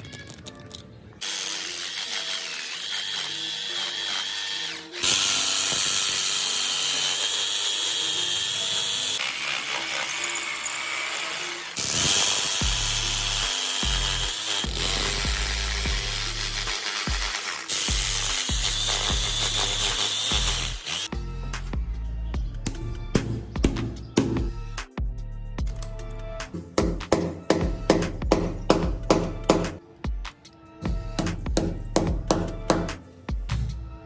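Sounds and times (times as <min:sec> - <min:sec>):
background music: 0:00.0 - 0:34.0
power drill whining: 0:01.2 - 0:21.1.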